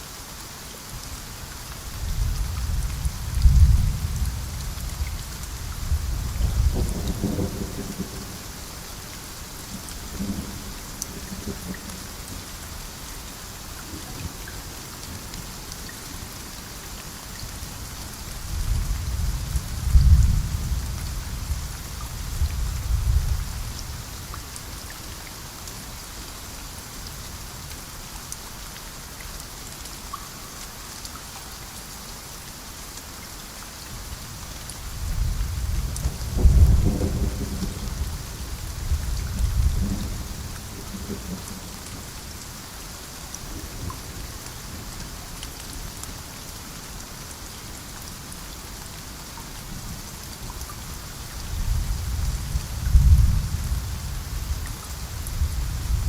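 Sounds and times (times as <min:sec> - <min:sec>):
steady rain falling: 0:00.0 - 0:56.0
thunder rumbling: 0:05.8 - 0:08.5, 0:35.0 - 0:41.7.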